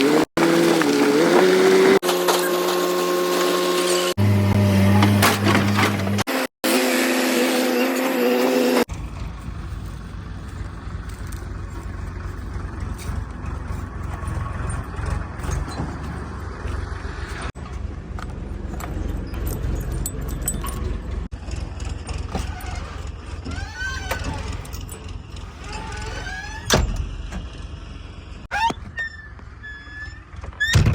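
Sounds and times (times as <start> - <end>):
diesel machinery engine rumble: 8.8 - 30.9
metallic clinks and rattles: 18.6 - 21.6.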